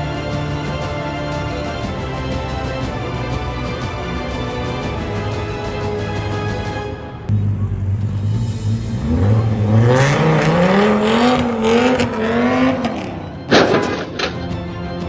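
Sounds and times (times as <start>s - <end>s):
car engine accelerating: 7.3s - 13.2s.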